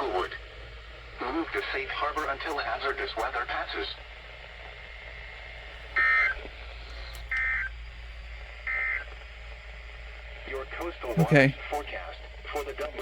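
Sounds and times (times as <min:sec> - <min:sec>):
faint radio hiss and hum: 0:00.0 - 0:13.0
digital data bursts over radio: 0:01.1 - 0:04.0, 0:10.3 - 0:13.0.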